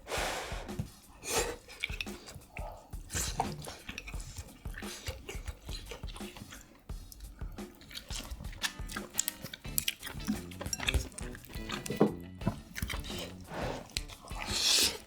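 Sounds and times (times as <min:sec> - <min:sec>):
wet chewing: 0:00.0 - 0:15.0
mouth clicks and smacks: 0:00.7 - 0:15.0.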